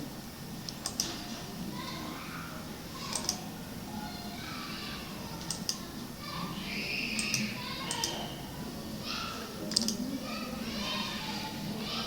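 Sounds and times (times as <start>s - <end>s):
computer mouse clicks: 0.6s - 1.2s, 3.1s - 3.4s, 5.4s - 5.8s, 7.2s - 8.2s, 9.7s - 10.1s.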